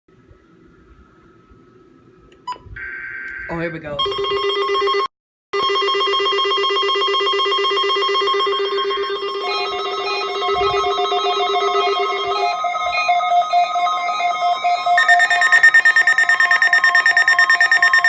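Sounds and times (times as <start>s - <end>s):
trilling buzzer-like alert tone: 6.6s - 18.0s.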